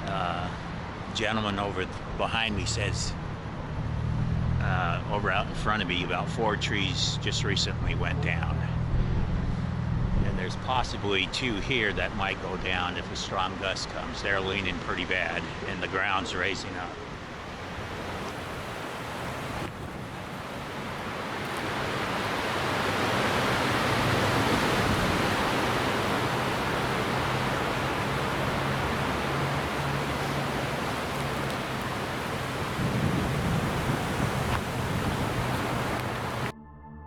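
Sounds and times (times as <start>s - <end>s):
gusting wind through trees: 16.9s - 36.5s
wind buffeting microphone: 17.2s - 36.5s.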